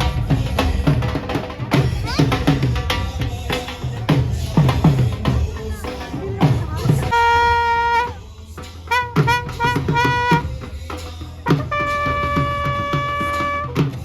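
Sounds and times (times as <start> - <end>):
steady drum beat: 0.0 - 14.0
held wind instrument notes: 5.8 - 10.8, 11.4 - 14.0.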